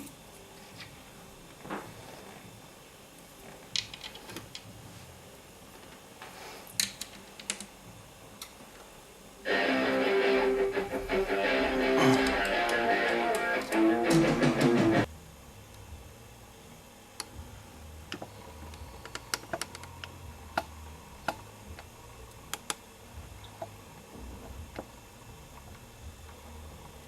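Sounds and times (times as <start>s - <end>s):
guitar music: 9.5s - 15.1s
low hum: 9.5s - 16.5s.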